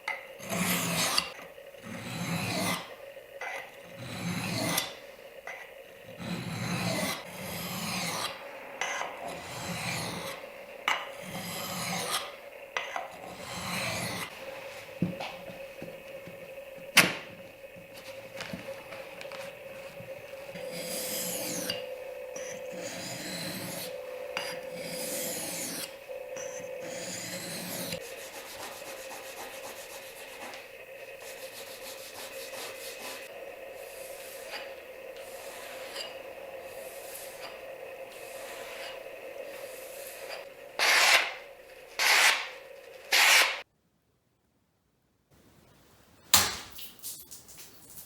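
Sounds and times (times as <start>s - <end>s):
knife rasping on sharpening stone: 39.8s - 41.4s, 42.0s - 42.5s, 43.1s - 43.6s.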